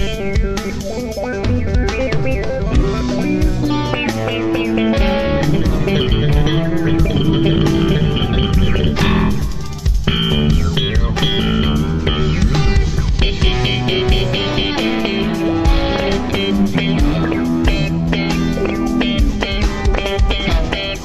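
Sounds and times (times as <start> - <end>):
bass guitar: 0.0 - 21.0
electric guitar: 0.0 - 21.0.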